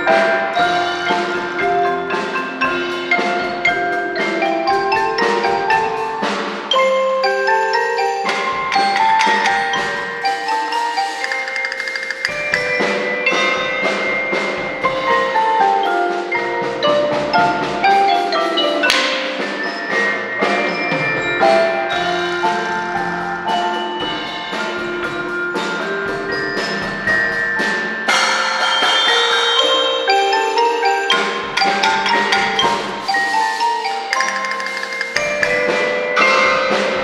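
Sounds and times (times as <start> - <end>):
tuned mallet percussion melody: 2.7 - 14.4, 29.6 - 36.5.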